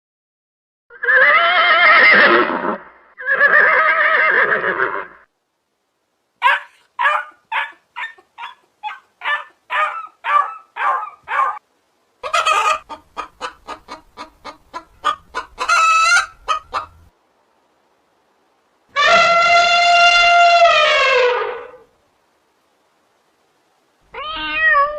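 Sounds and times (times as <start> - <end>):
animal calls: 6.4 - 11.6, 18.9 - 21.9.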